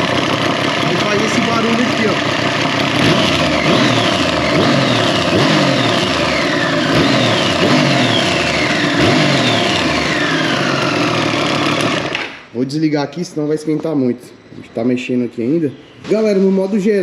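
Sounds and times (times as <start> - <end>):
motorcycle engine running: 0.0 - 12.4.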